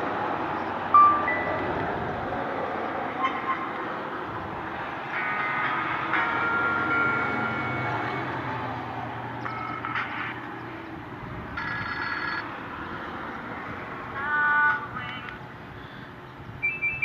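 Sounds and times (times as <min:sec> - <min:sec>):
electronic ringtone chords: 0:00.9 - 0:01.8, 0:05.1 - 0:08.4, 0:09.4 - 0:10.4, 0:11.6 - 0:12.5, 0:16.6 - 0:17.0.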